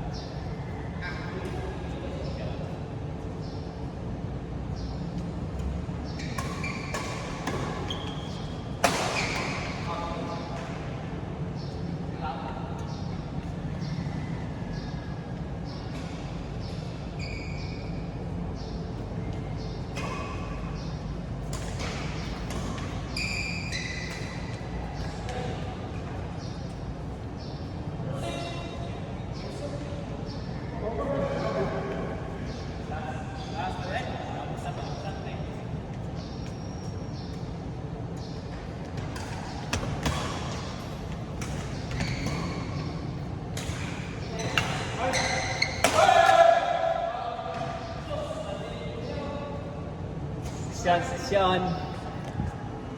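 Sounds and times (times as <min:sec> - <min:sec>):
shoes squeaking on court floor: 0:04.7 - 0:10.9, 0:12.8 - 0:30.6, 0:31.3 - 0:49.2, 0:50.4 - 0:52.9
racket hitting shuttlecock: 0:06.4 - 0:09.8, 0:45.8 - 0:46.6.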